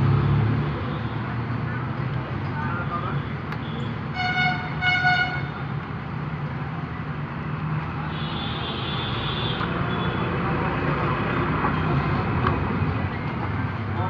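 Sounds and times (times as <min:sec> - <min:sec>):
street traffic: 0:00.0 - 0:14.0
car horn toot: 0:04.1 - 0:05.5.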